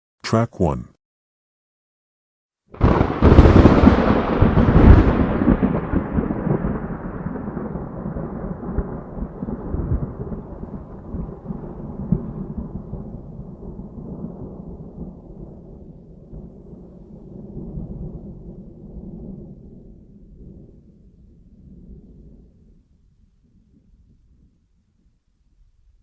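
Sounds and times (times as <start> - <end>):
thunder crack: 2.8 - 11.3
thunder rumble: 2.8 - 15.5.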